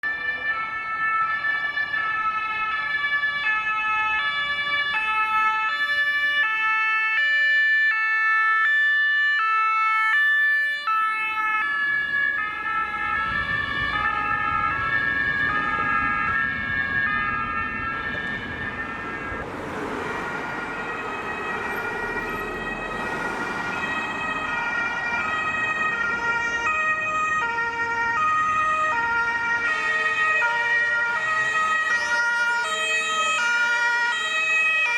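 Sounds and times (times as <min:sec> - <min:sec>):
two-tone fire engine sirens: 0:00.0 - 0:34.9
vehicle engine and road noise: 0:07.9 - 0:34.9.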